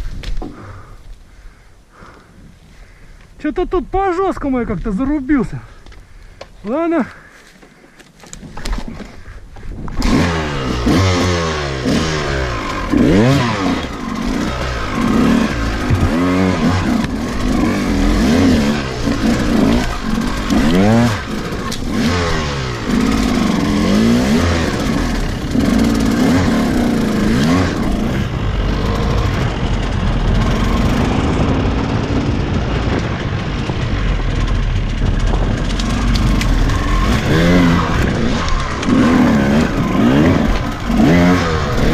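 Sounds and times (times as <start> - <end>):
two-stroke motorcycle engine revving: 9.9 - 41.9.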